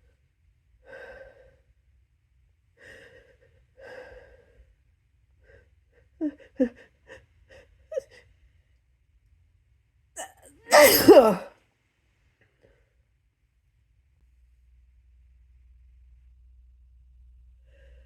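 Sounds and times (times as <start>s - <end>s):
person gasping breaths: 10.7s - 11.4s.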